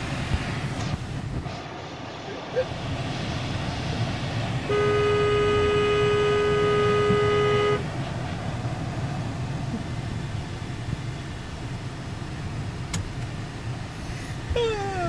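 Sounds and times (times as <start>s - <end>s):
idling car engine rumble: 0.0s - 15.0s
car horn blare: 4.6s - 7.9s.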